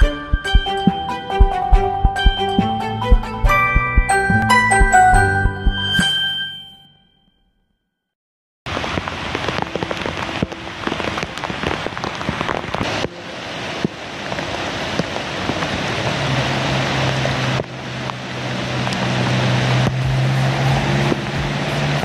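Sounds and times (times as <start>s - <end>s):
heavy rain pattering: 8.7s - 22.0s.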